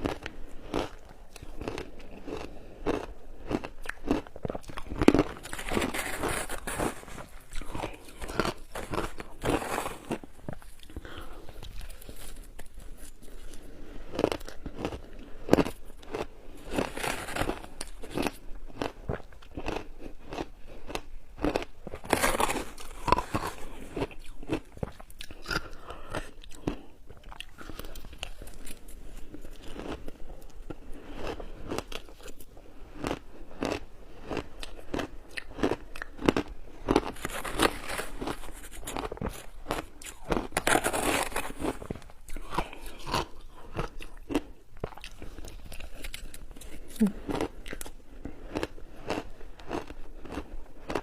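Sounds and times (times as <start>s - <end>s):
crunching and chewing ice: 0.0s - 51.0s.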